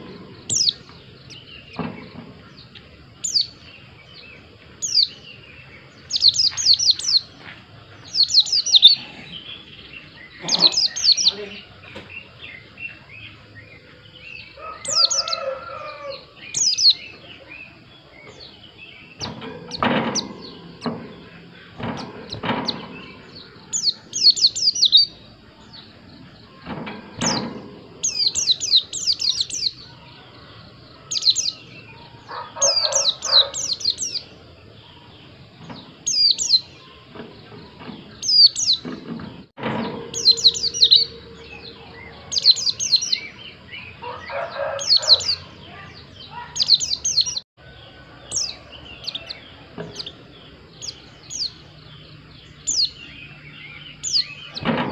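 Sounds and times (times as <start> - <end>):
bird singing high falling chirps: 0.0 - 7.4, 8.0 - 38.9, 39.6 - 54.9
lower bird calls: 0.0 - 54.9
dull knocks: 19.2 - 23.4.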